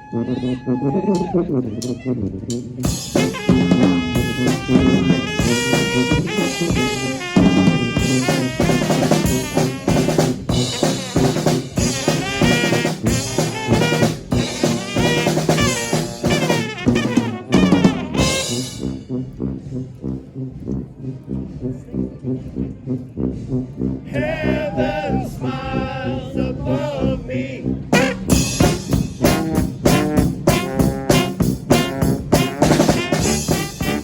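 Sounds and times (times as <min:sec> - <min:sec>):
horns playing melody: 0:00.0 - 0:34.0
steady drum beat: 0:01.0 - 0:20.4, 0:27.9 - 0:34.0.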